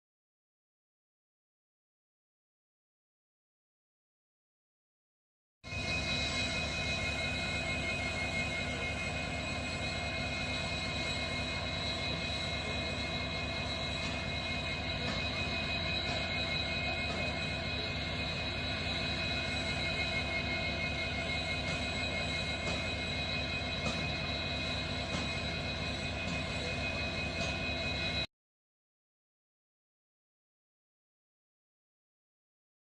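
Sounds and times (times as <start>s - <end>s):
diesel locomotive engine idling: 5.7s - 28.3s
high-pitched whines: 5.7s - 28.3s.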